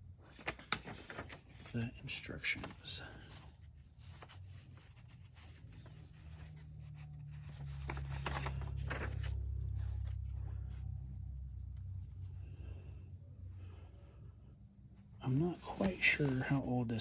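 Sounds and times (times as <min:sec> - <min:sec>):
paper pages rustling: 0:00.2 - 0:12.4, 0:15.3 - 0:17.0
low handling rumble: 0:07.3 - 0:12.5.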